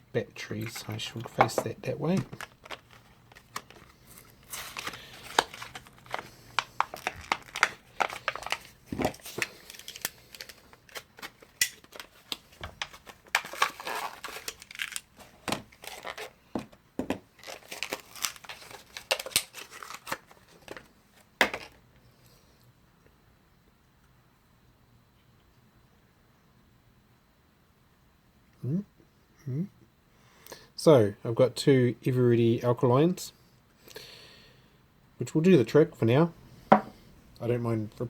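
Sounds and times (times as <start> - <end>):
battery packaging torn and crinkled: 2.3 - 16.4, 17.4 - 20.9.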